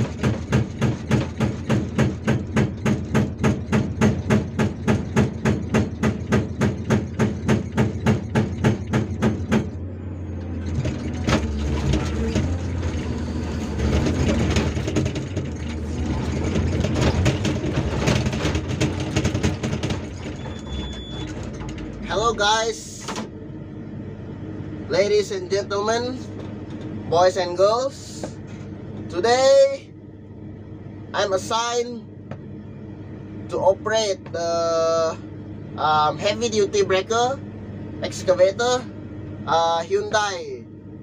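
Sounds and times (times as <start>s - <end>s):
hydraulic breaker hammer pounding rock: 0.0s - 9.8s, 10.8s - 20.5s
knocks: 0.0s - 9.8s, 13.8s - 15.8s, 16.4s - 20.5s
excavator diesel engine running: 0.0s - 41.0s.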